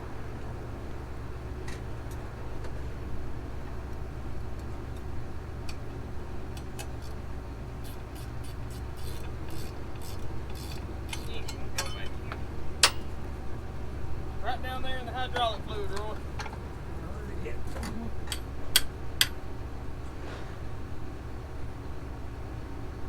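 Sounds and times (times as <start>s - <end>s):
steady low hum: 0.0s - 23.0s
ratchet wrench clicking: 7.8s - 11.9s
hand tools clinking on metal: 7.9s - 13.2s, 17.6s - 18.9s.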